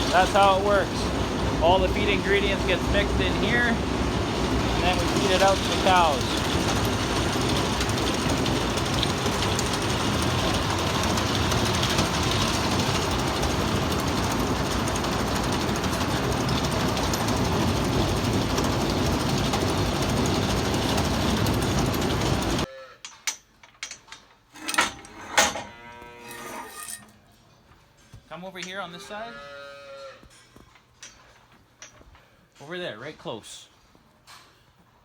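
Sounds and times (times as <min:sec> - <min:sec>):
farm machinery running: 0:00.0 - 0:22.7.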